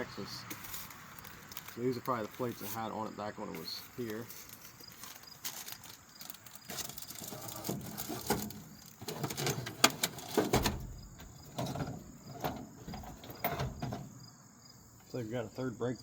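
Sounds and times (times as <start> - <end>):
tools clinking and rustling: 3.6 - 14.1.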